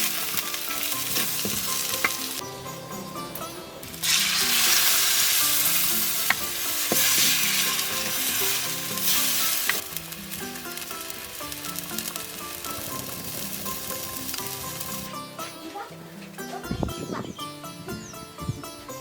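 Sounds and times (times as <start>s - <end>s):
food sizzling in hot oil: 0.0s - 15.4s
stirring clicks: 5.8s - 15.1s.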